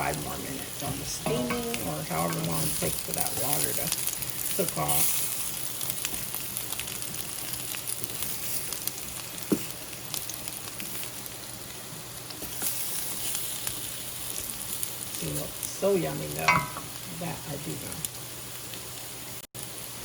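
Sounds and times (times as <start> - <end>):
beets sizzling in a pan: 0.0 - 20.0.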